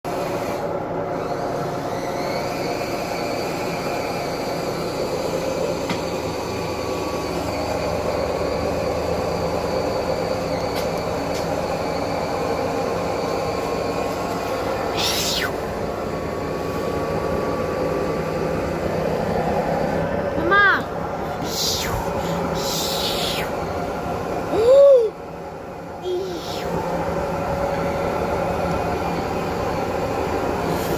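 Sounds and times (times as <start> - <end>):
washing machine spinning: 0.0 - 30.9.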